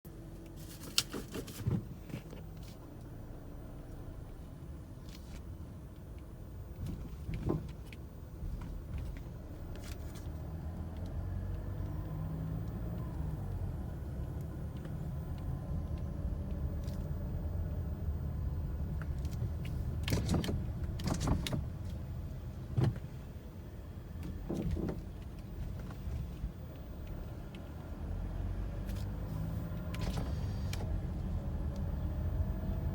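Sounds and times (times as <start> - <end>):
low road rumble: 0.0 - 32.9
car suspension clunks: 6.7 - 9.2, 19.0 - 22.0, 22.6 - 23.2, 24.1 - 26.4.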